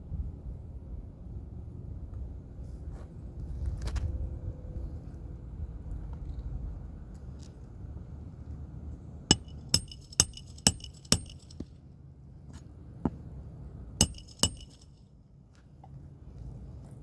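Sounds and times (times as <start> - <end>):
sharp taps with glassy chink: 9.3 - 11.7, 14.0 - 14.9.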